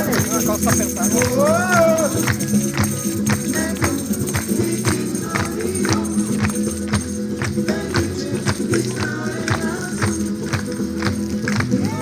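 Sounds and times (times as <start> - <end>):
jingling tambourine-like percussion: 0.0 - 12.0.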